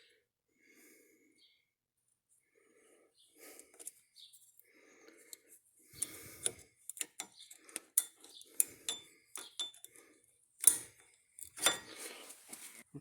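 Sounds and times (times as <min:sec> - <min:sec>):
metal hand tools clinking: 0:08.0 - 0:10.0, 0:10.6 - 0:12.0
soft rustling: 0:12.0 - 0:12.9.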